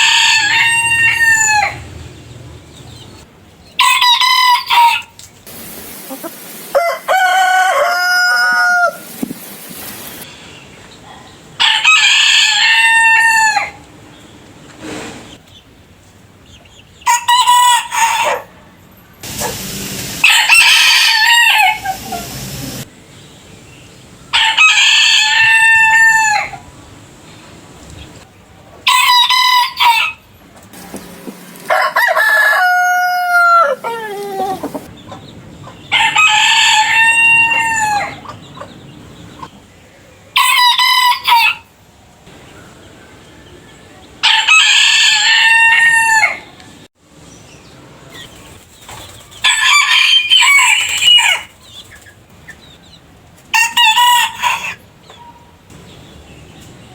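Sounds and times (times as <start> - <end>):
roosters crowing: 0.0 - 10.3, 11.6 - 13.9, 17.0 - 18.6, 19.2 - 22.9, 24.3 - 26.7, 28.8 - 39.4, 40.3 - 41.8, 43.4 - 46.8, 49.4 - 51.6, 53.5 - 54.8.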